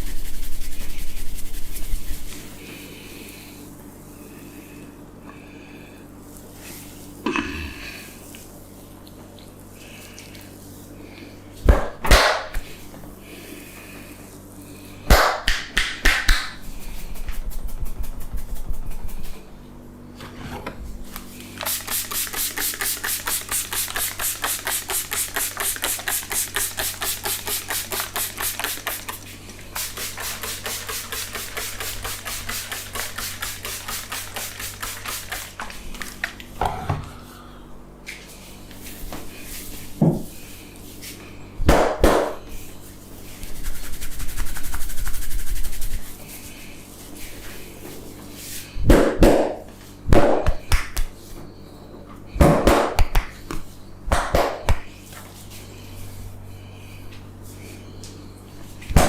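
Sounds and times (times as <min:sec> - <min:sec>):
hands slapping during massage: 0:11.7 - 0:12.6, 0:15.1 - 0:16.6, 0:21.6 - 0:29.3, 0:43.6 - 0:46.0, 0:48.9 - 0:51.2, 0:52.4 - 0:54.9.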